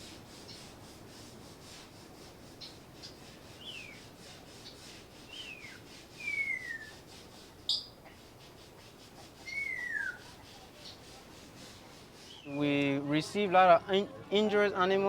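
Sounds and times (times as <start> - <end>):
parrots whistling: 5.4 - 6.9, 7.7 - 8.0, 9.4 - 10.2
parrot chirps: 7.7 - 8.0, 9.4 - 10.2.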